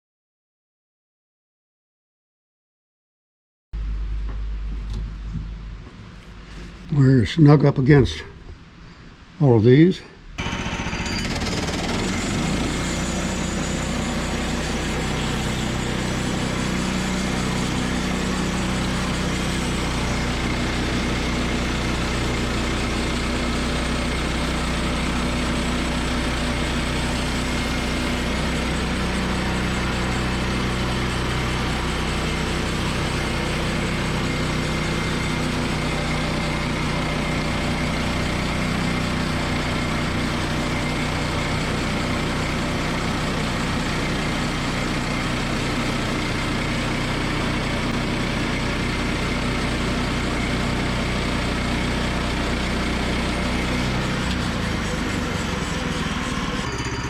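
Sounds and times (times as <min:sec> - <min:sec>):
deep hum: 0:03.8 - 0:07.0
gasoline engine running steadily: 0:10.4 - 0:57.0.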